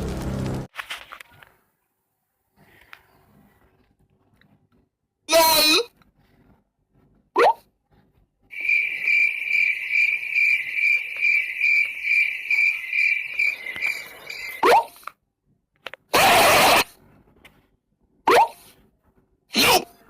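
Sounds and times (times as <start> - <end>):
loud burst of noise: 0.0 - 0.7
cricket chirping: 8.5 - 14.6.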